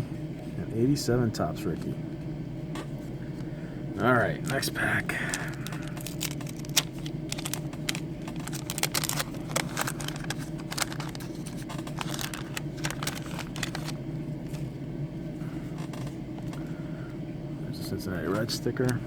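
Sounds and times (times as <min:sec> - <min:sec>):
paper pack tearing and crinkling: 0:04.4 - 0:14.6.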